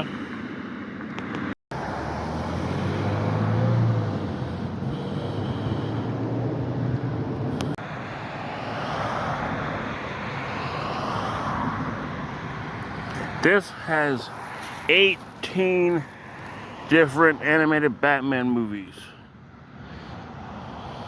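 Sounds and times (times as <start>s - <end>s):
vehicles passing: 0.0s - 21.0s
low engine hum: 0.1s - 13.4s.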